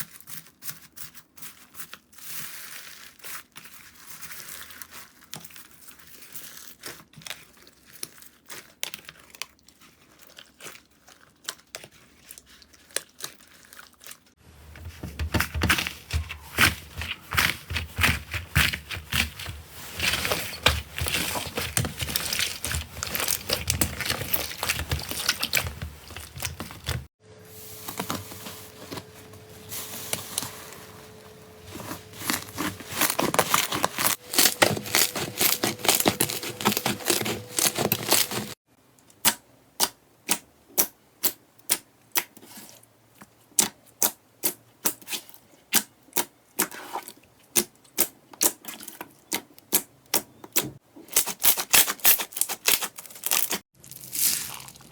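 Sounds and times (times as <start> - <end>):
slime crackling and popping: 21.0 - 27.0, 32.6 - 38.5, 51.1 - 54.9.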